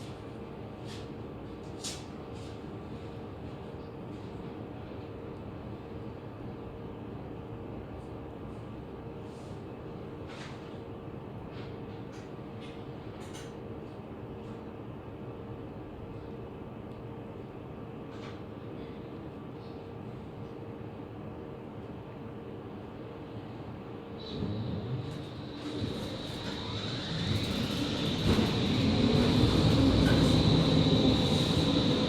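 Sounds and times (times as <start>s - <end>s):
tram running along track: 24.2s - 32.0s.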